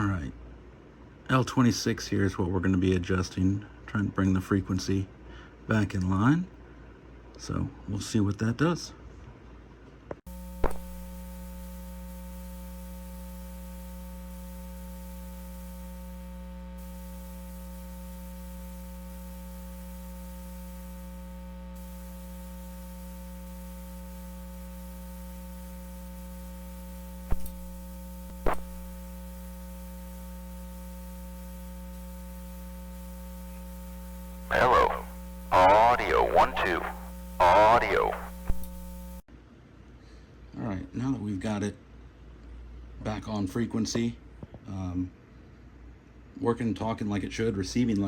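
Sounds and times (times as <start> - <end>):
electrical hum: 10.3 - 39.2
sharp clicks: 27.3 - 27.7.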